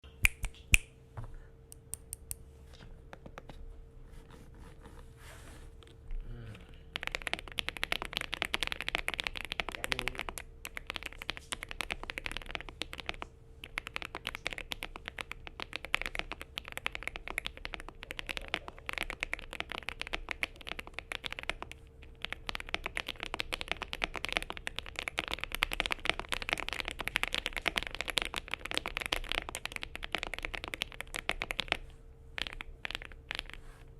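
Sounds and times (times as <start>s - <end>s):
mechanical keyboard typing: 6.9s - 31.8s, 32.4s - 33.6s.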